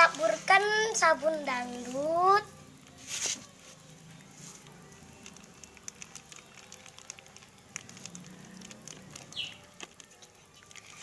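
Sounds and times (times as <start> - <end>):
powder sprinkling ticks and patter: 4.6 - 11.0.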